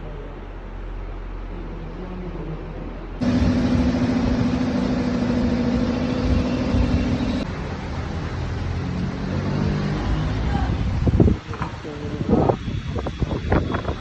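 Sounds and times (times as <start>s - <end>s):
motor pitched hum: 3.2s - 7.5s
motor low rumble: 3.2s - 8.4s.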